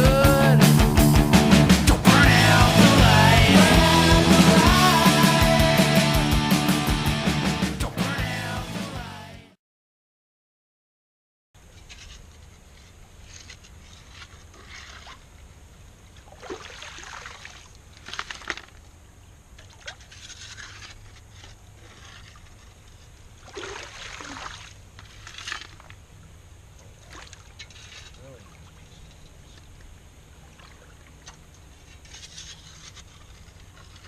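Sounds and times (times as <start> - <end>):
gravel scraping: 11.7 - 15.3, 19.9 - 23.3, 27.6 - 29.1, 31.8 - 34.0
water splashing: 13.8 - 34.0.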